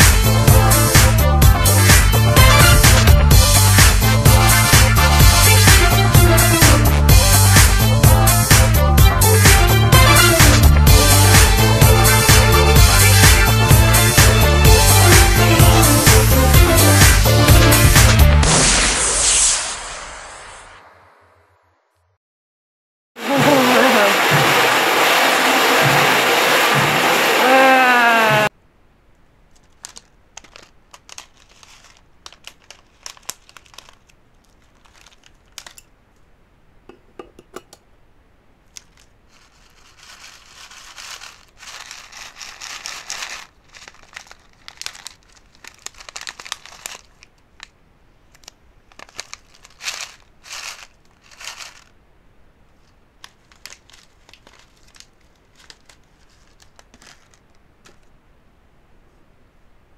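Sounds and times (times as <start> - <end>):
bag crinkling and rustling: 29.5 - 35.9, 38.7 - 52.0, 52.7 - 58.2.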